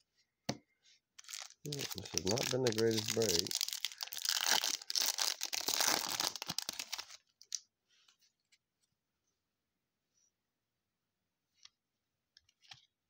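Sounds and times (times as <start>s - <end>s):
foil wrapper crinkling and tearing: 1.2s - 7.6s.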